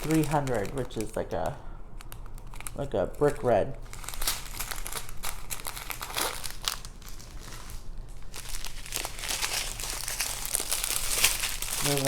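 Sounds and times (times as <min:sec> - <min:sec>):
plastic bags crinkling: 0:00.0 - 0:12.0
small clicks and crackles: 0:08.4 - 0:12.0.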